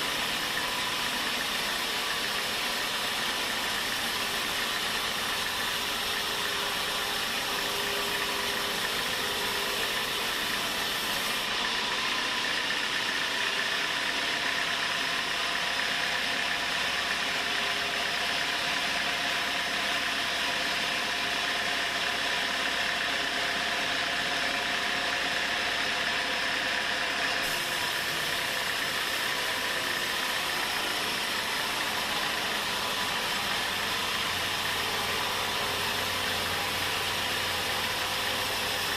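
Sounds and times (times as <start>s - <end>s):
sawmill machinery drone: 0.0s - 38.9s.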